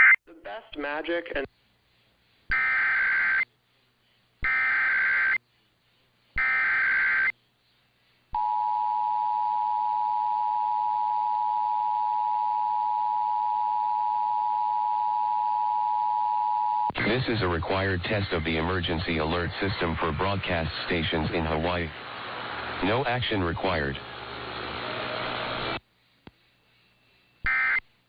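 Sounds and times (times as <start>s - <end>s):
data bursts: 6.4s - 7.3s, 27.4s - 27.8s.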